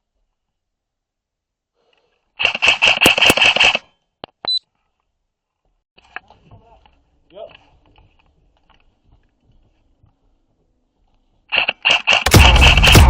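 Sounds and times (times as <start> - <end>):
airsoft rifle full-auto burst: 2.4 - 3.9, 11.5 - 13.0.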